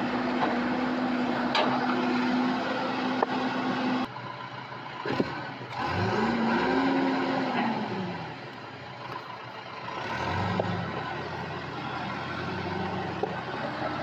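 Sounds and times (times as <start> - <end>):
excavator engine revving: 5.0 - 14.0.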